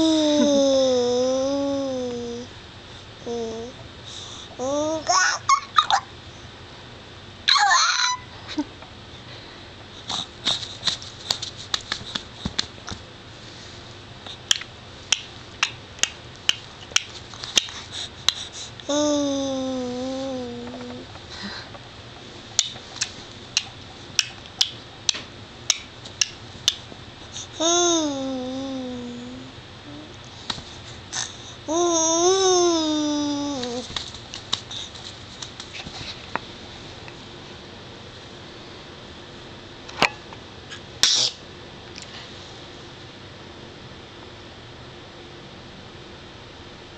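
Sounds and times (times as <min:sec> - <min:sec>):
baby vocalizing: 0:00.0 - 0:02.5, 0:18.9 - 0:21.1, 0:27.4 - 0:30.1, 0:31.2 - 0:33.9.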